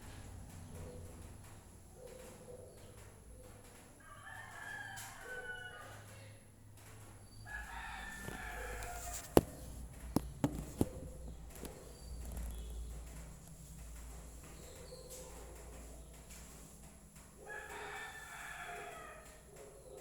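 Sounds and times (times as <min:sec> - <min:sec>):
rooster crowing: 0:04.0 - 0:06.4, 0:07.5 - 0:09.4, 0:17.4 - 0:19.4.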